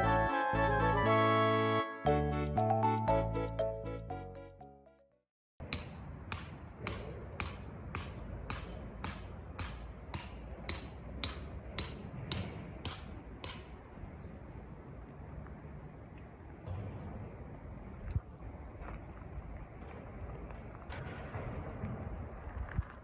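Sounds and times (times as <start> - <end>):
tent stake hammered with metallic ring: 5.6 - 13.8.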